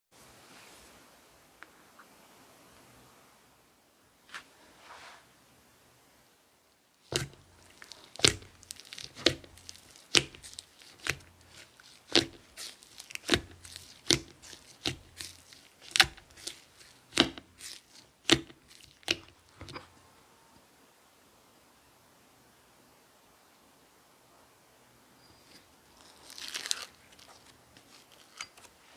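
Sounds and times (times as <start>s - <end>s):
slime crackling and snapping: 7.0s - 19.8s, 26.0s - 28.7s.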